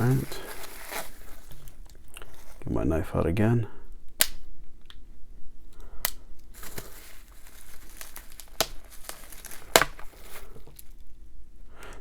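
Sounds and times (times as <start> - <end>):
packaging crinkling and tearing: 0.0 - 2.7, 6.4 - 11.1.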